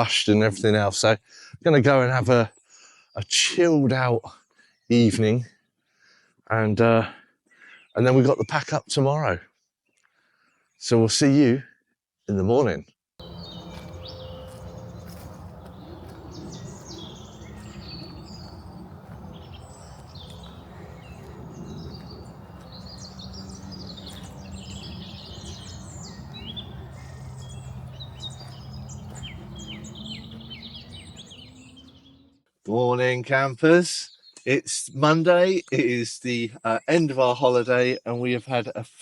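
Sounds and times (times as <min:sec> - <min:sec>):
songbirds singing and chirping: 0:13.2 - 0:32.4, 0:34.1 - 0:34.5.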